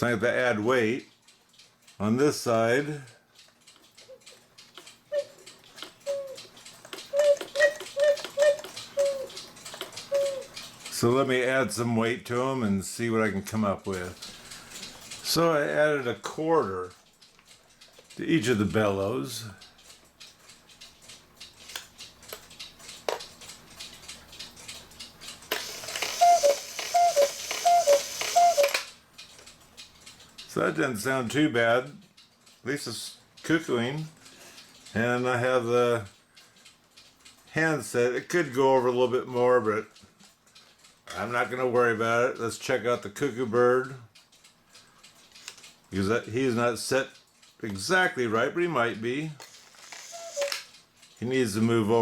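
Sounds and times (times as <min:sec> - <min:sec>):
clock works clicks and knocks: 0:00.0 - 0:12.5, 0:13.6 - 0:31.4, 0:33.7 - 0:52.0
soft cuckoo pipe toots: 0:05.1 - 0:10.6, 0:25.8 - 0:28.9, 0:50.0 - 0:50.7.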